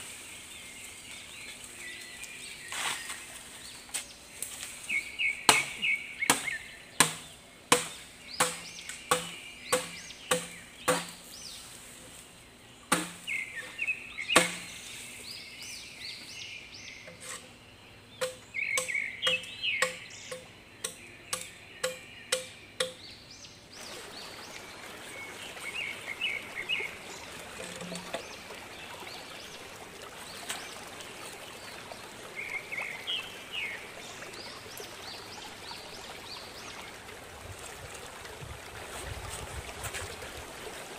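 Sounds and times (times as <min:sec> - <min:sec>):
birds chirping: 0:00.0 - 0:11.8, 0:12.4 - 0:37.1
blade chopping strikes: 0:05.5 - 0:11.2, 0:12.9 - 0:13.2, 0:14.4 - 0:14.7
stream water rushing: 0:23.7 - 0:40.9.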